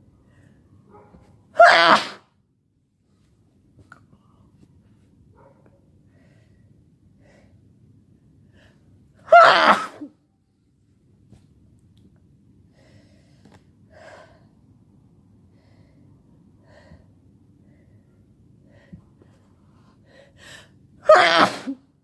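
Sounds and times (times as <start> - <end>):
person sneezing: 1.6 - 2.2, 9.3 - 10.1, 21.1 - 21.8.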